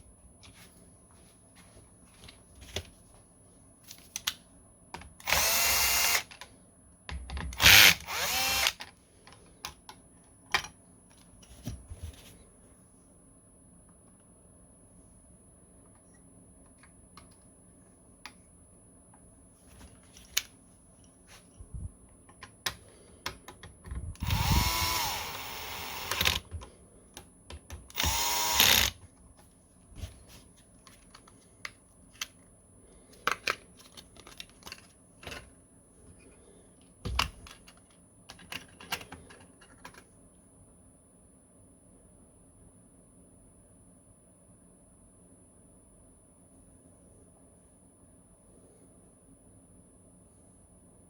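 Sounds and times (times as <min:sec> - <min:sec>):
power screwdriver driving screws: 0:05.2 - 0:06.3, 0:07.6 - 0:08.8, 0:24.2 - 0:26.5, 0:27.9 - 0:29.0
clicks and knocks of parts handled: 0:33.1 - 0:35.5, 0:37.1 - 0:40.1.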